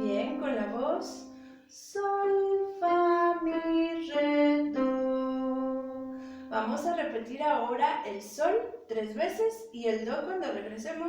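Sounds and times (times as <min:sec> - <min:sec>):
person singing descending scale: 0:00.0 - 0:01.4.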